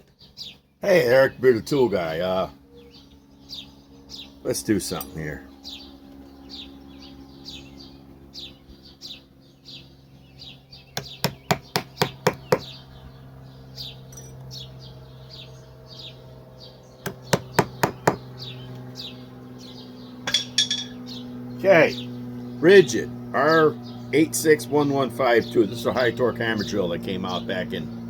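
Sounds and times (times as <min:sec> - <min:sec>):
small birds chirping: 0:00.0 - 0:28.0
steady low hum: 0:00.0 - 0:28.0
quick runs of sharp knocks: 0:11.0 - 0:12.7, 0:17.0 - 0:18.4.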